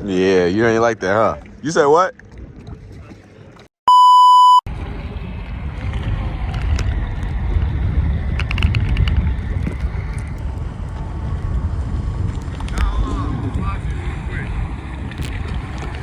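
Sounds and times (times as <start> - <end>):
censor bleep: 3.9 - 4.7
wind buffeting microphone: 4.7 - 16.0.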